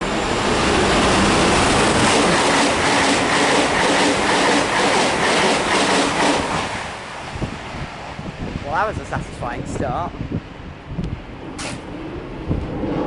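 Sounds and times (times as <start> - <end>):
train rushing past: 0.0 - 9.8, 10.7 - 13.0
rapid clatter of train wheels: 0.4 - 6.9.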